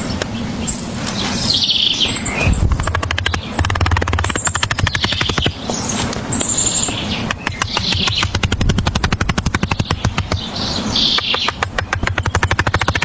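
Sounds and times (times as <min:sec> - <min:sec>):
birds chirping: 0:00.0 - 0:13.0
fast sharp taps: 0:02.7 - 0:05.8, 0:07.2 - 0:10.5, 0:11.1 - 0:13.0.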